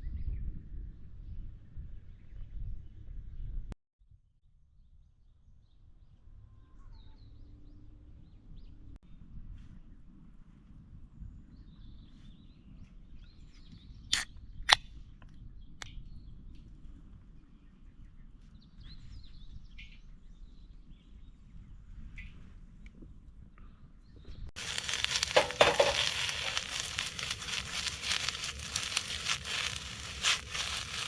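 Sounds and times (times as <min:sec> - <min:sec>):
birds chirping faintly: 0:24.0 - 0:31.0.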